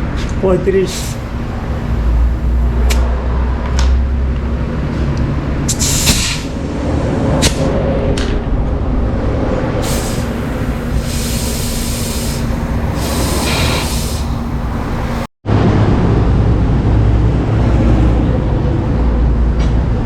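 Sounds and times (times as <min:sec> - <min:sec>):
street traffic rumble: 0:00.0 - 0:20.0
compressed air hissing: 0:00.9 - 0:03.0, 0:05.7 - 0:06.6, 0:09.8 - 0:15.3.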